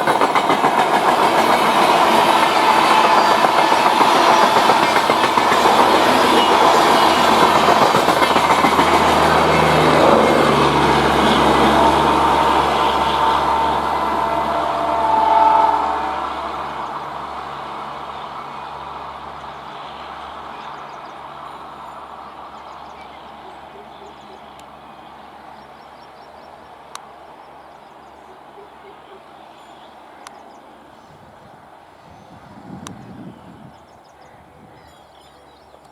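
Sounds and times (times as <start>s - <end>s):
train wheels clattering over rail joints: 0.0s - 10.9s
train rumbling past: 0.0s - 35.3s.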